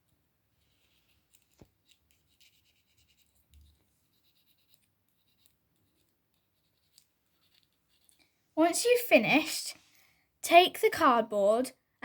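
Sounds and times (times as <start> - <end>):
paperclip scratching on magnet: 0.8 - 8.2.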